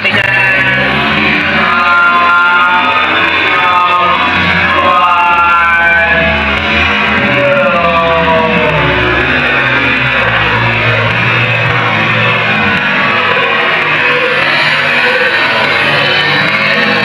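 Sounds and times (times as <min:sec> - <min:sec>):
rock music: 0:00.0 - 0:17.0.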